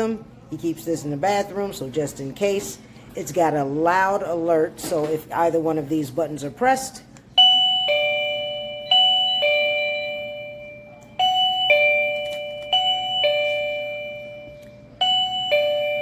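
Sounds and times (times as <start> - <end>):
pager ding-dong chime: 7.4 - 16.0.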